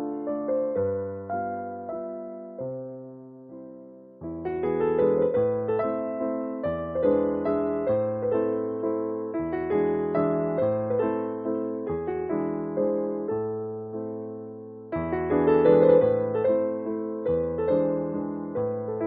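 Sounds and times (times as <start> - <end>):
piano bass line: 0.0 - 19.0
piano chords: 0.0 - 19.0.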